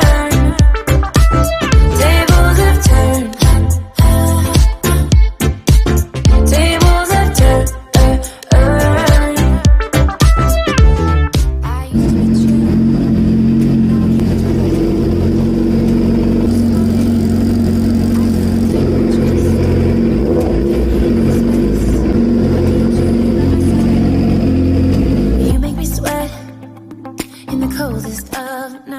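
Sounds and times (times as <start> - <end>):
motorcycle engine running: 11.9 - 26.1.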